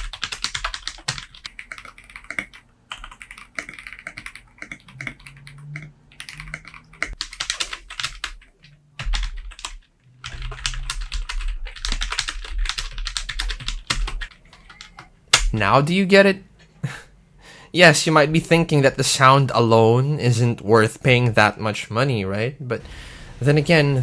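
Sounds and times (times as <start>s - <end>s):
rapid typing on keyboard: 0.0s - 15.1s.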